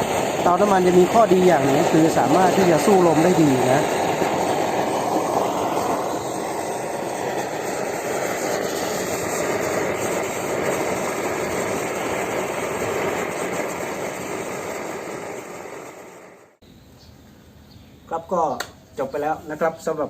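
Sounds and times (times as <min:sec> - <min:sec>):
wind gusting over microphone: 0:00.0 - 0:16.0
camping stove burner roar: 0:00.0 - 0:16.6.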